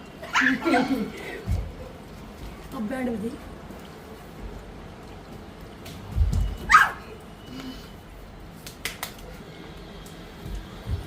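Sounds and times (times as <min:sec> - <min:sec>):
dog yelping: 0:00.3 - 0:00.6, 0:06.7 - 0:07.1.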